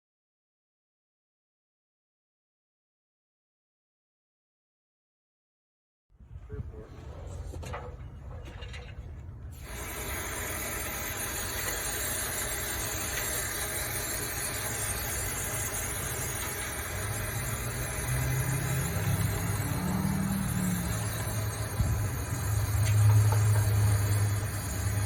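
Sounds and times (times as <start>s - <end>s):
machine hissing: 9.6s - 25.0s
machine low rumble: 15.0s - 25.0s.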